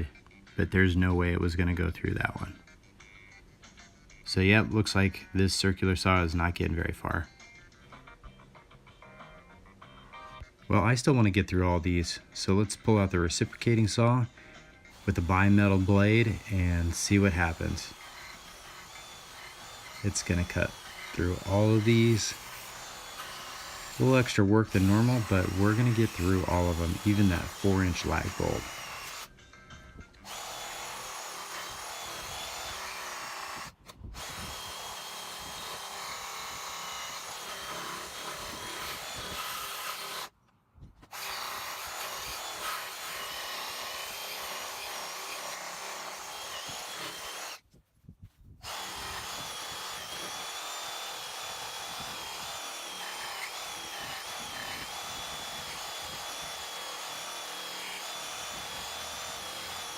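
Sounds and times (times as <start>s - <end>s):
reciprocating saw cutting wood and metal: 10.8s - 29.4s, 30.0s - 40.4s, 41.0s - 47.6s, 48.6s - 59.9s.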